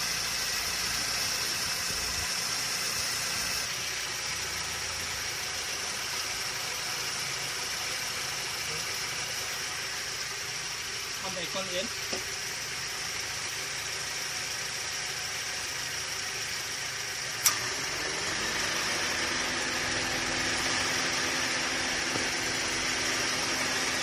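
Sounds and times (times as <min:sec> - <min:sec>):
car engine idling: 0:00.0 - 0:24.0
compressor clutch click: 0:17.4 - 0:17.7.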